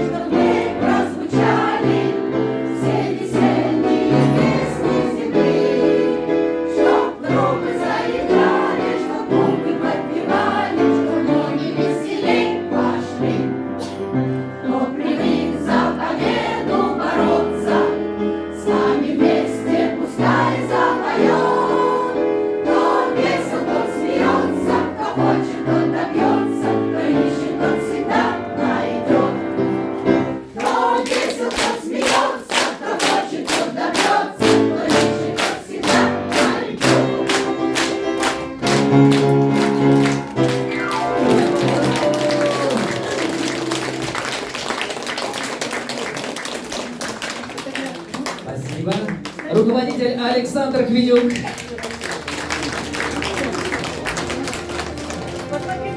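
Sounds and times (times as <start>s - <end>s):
choir singing in unison: 0.0s - 44.0s
instrumental accompaniment: 0.0s - 44.8s.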